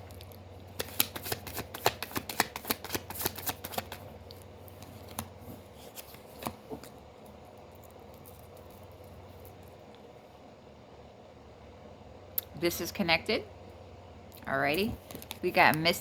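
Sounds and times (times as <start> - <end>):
cards tapping: 0.7 - 4.1
cards being shuffled: 0.7 - 7.0.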